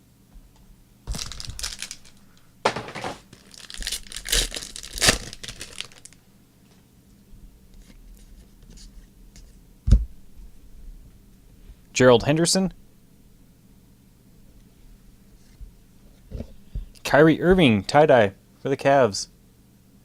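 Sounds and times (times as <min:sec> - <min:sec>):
wrapper tearing and crinkling: 0:01.1 - 0:02.2, 0:03.3 - 0:06.2
cards being handled: 0:01.1 - 0:06.0.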